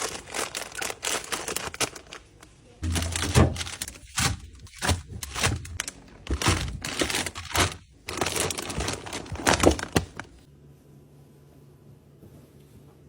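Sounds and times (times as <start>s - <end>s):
plastic packaging crinkling: 0.0s - 10.5s
containers clicking and knocking: 2.8s - 10.4s.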